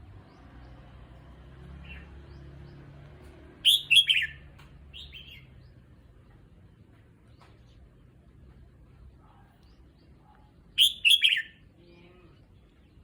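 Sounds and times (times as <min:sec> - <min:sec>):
bird calling sharp notes: 0:03.6 - 0:04.4, 0:10.8 - 0:11.6.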